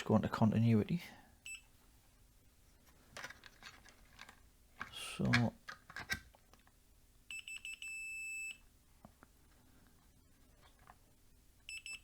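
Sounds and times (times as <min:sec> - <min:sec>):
multimeter continuity beeps: 0:01.4 - 0:01.7, 0:07.3 - 0:08.6, 0:11.6 - 0:12.0.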